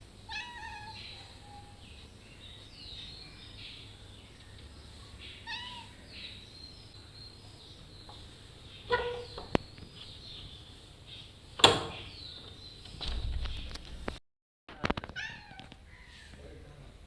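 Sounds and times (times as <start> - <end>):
cat meowing softly: 0.3 - 1.8, 5.4 - 6.0, 14.8 - 16.3.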